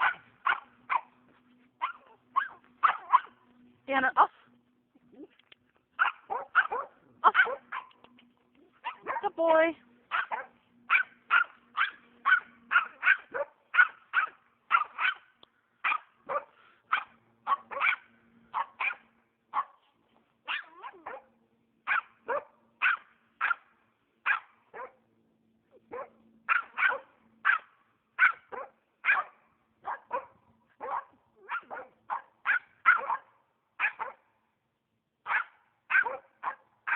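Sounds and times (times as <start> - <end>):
dog barking: 0.0 - 1.2, 1.8 - 3.4, 6.0 - 8.0, 8.8 - 9.3, 10.1 - 19.8, 20.5 - 21.3, 21.9 - 25.0, 25.9 - 34.2, 35.2 - 36.9.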